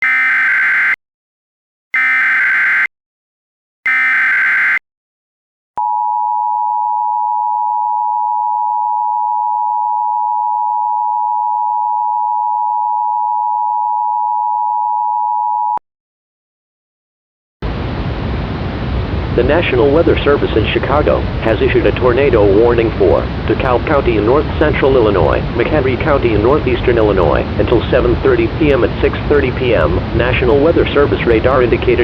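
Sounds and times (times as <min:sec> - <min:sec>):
buzzy data bursts: 0:00.0 - 0:01.0, 0:02.0 - 0:02.9, 0:03.9 - 0:04.8
two-tone attention signal: 0:00.0 - 0:01.0, 0:02.0 - 0:02.9, 0:03.9 - 0:04.8.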